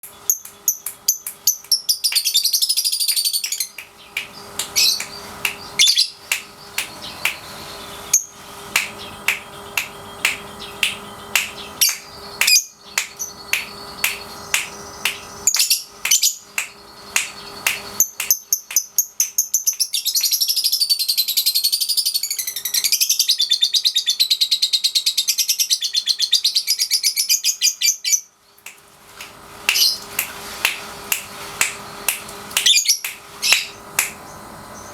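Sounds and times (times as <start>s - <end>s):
lovebird chirping and trilling: 0.3s - 28.3s, 29.7s - 30.1s, 32.6s - 34.9s.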